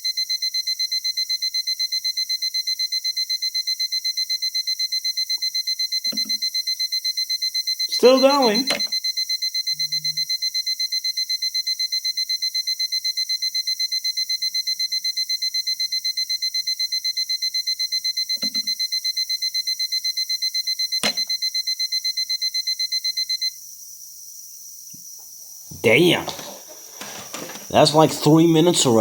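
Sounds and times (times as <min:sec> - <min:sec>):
alarm clock beeping: 0:00.0 - 0:23.5, 0:25.8 - 0:29.0
sharp click: 0:21.0 - 0:21.3.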